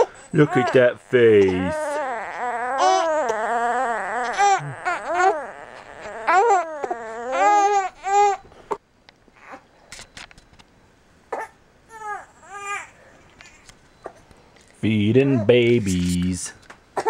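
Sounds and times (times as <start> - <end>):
baby crying: 0.0 - 8.4, 9.4 - 9.6, 11.3 - 12.9.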